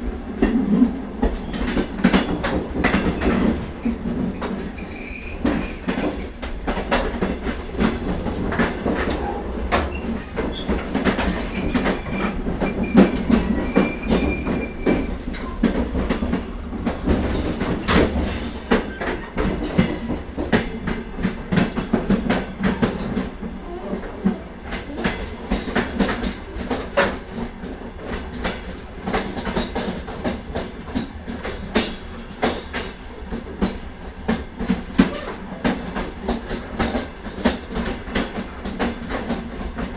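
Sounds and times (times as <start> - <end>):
train running rumble: 0.0 - 39.9
train wheels clattering on rail joints: 0.0 - 39.9.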